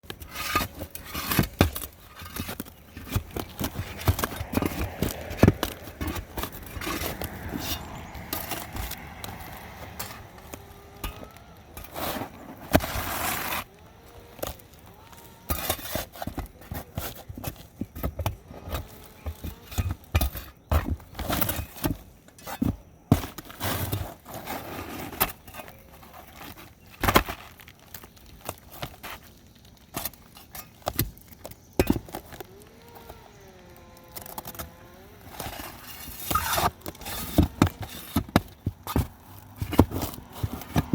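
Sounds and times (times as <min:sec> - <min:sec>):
scraping rush: 0:02.2 - 0:13.7.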